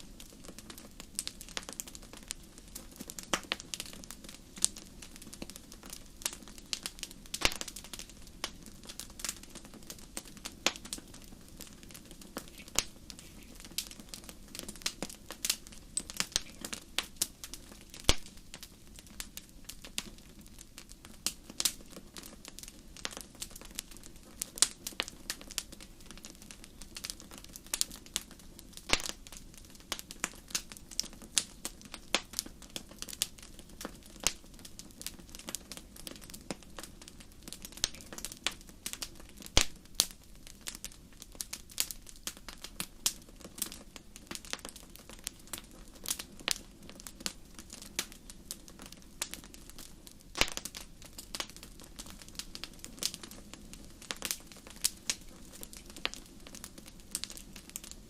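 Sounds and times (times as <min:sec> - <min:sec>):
low rumble of flames: 0:00.0 - 0:58.0
wood fire crackling: 0:00.0 - 0:58.0
sharp pops and snaps: 0:04.6 - 0:09.7, 0:10.6 - 0:19.4, 0:28.8 - 0:34.4, 0:35.0 - 0:41.0, 0:50.3 - 0:53.5.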